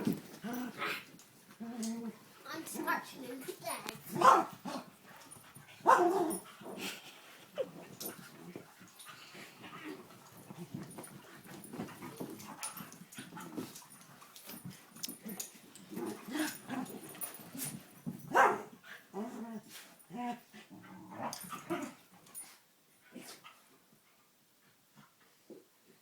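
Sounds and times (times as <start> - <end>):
dogs making soft low vocal sounds: 3.4 - 17.8.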